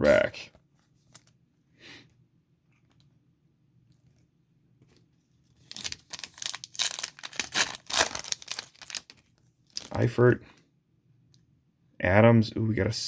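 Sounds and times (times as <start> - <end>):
plastic wrapper tearing and crinkling: 5.6 - 10.1.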